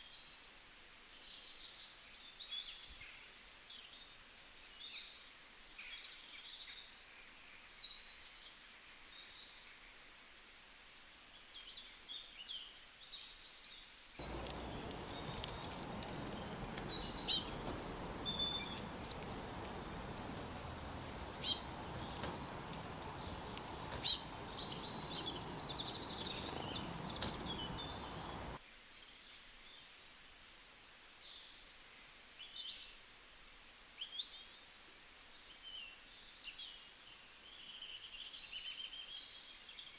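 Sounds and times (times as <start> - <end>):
background hiss: 14.2 - 28.6
loud sharp bird calls: 14.2 - 28.6
small birds chirping: 14.2 - 28.6.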